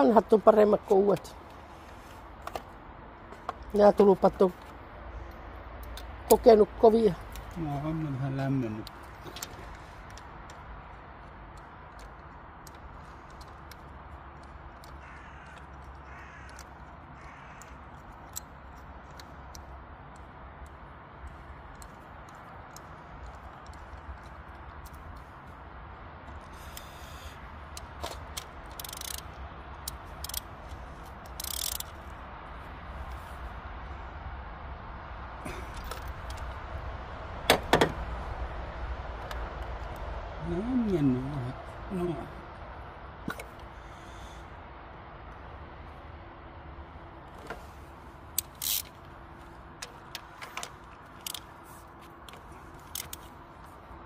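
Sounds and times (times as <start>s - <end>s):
hand tool metallic clicks: 28.0s - 30.5s, 31.1s - 32.1s.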